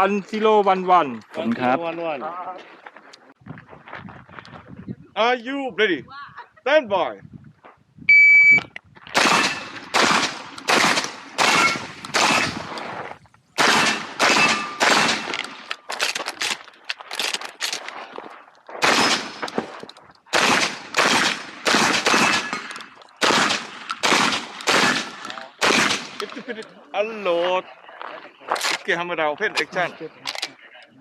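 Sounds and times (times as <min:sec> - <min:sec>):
shotgun shots: 0:09.2 - 0:12.8, 0:13.6 - 0:15.7, 0:18.8 - 0:19.7, 0:20.3 - 0:26.4.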